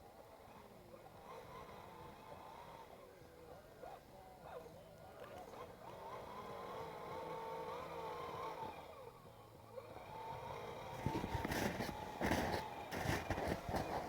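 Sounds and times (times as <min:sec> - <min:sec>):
toy truck electric motor whining: 0:05.4 - 0:09.1, 0:09.8 - 0:14.0.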